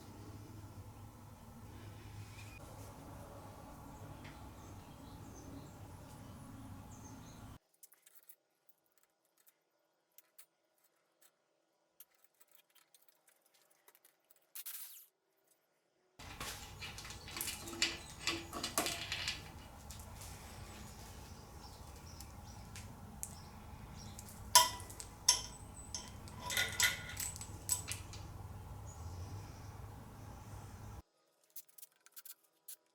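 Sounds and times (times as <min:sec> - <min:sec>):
metal parts clinking: 0:16.2 - 0:31.0
steady low hum: 0:16.2 - 0:31.0.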